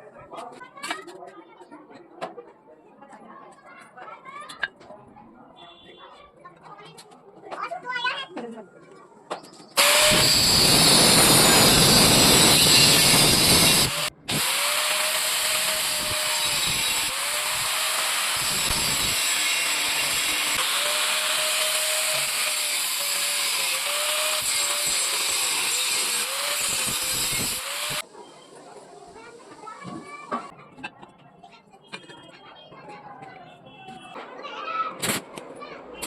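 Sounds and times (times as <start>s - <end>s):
angle grinder cutting steel: 9.8s - 28.0s.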